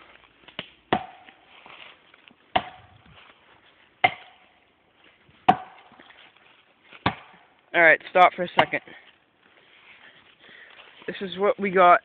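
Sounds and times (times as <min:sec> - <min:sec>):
axe chopping into tree trunk: 0:00.5 - 0:01.4, 0:02.5 - 0:03.0, 0:04.0 - 0:04.5, 0:05.4 - 0:06.0, 0:06.9 - 0:07.5, 0:08.5 - 0:08.9.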